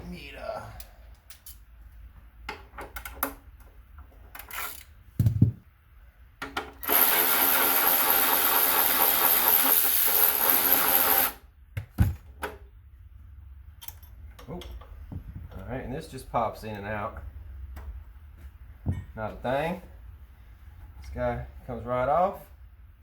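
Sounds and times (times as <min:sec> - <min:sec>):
electric drill running: 0:06.8 - 0:11.4.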